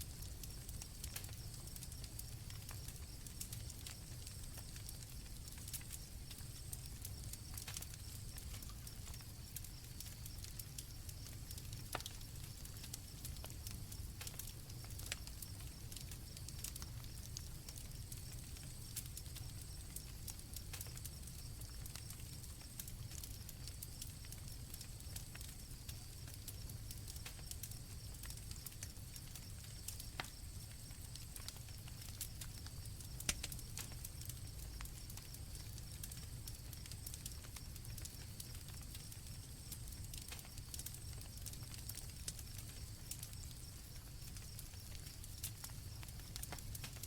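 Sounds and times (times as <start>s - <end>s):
campfire crackling and popping: 0.0s - 47.0s
crickets chirping: 15.2s - 46.5s.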